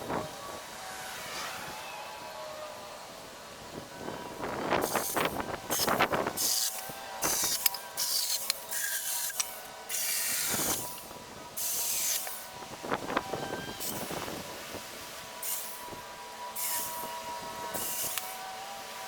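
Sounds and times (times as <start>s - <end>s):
saw rasping through branch: 4.8s - 12.6s, 15.3s - 19.0s.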